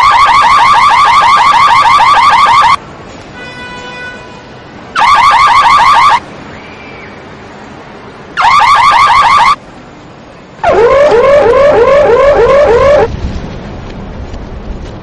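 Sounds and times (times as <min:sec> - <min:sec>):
car alarm warbling chirps: 0:00.0 - 0:02.8, 0:05.0 - 0:06.2, 0:08.4 - 0:09.6, 0:10.6 - 0:13.1.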